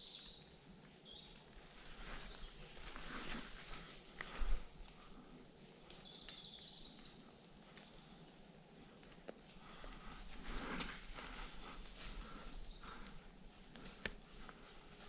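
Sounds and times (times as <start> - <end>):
faint outdoor background: 0.0 - 15.0.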